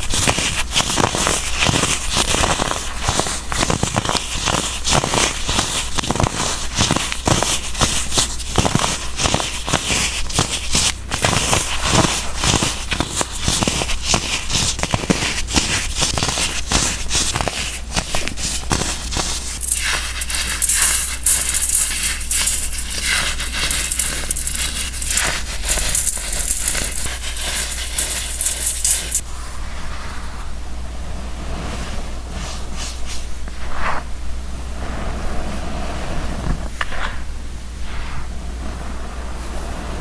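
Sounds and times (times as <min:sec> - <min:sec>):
baking soda blocks crunching: 0:00.0 - 0:29.2
steady low hum: 0:00.0 - 0:40.0.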